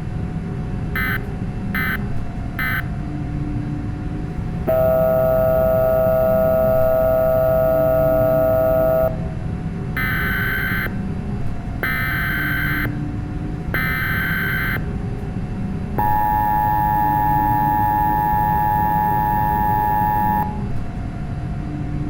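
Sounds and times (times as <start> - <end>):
low steady rumble: 0.0 - 22.0
warbling data bursts: 4.7 - 9.1
two-note attention signal: 4.7 - 9.2, 16.0 - 20.6.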